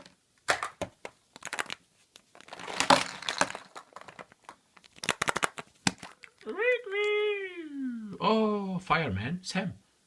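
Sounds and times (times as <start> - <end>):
wrapper crinkling: 0.0 - 6.7.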